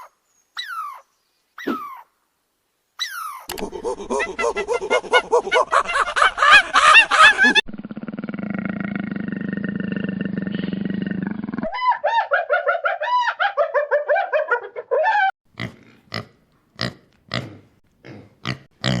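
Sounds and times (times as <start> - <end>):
high arched animal calls: 0.0 - 2.1, 3.0 - 8.7.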